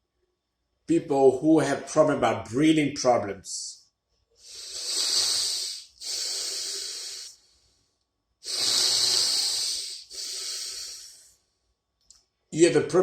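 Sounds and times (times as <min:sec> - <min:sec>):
man breathing heavily: 0:04.4 - 0:11.4.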